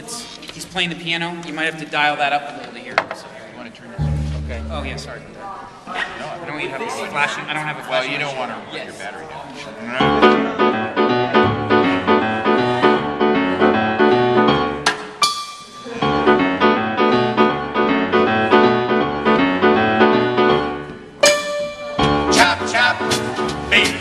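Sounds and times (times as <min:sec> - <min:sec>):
piano playing chords: 0:04.0 - 0:05.6, 0:10.2 - 0:14.9, 0:16.0 - 0:23.9.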